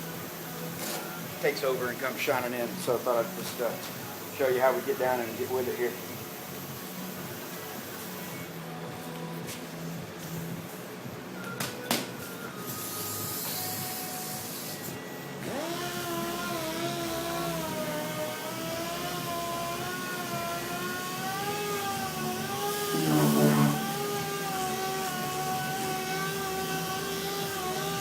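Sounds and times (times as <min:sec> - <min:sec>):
sander whining: 0:17.5 - 0:28.0.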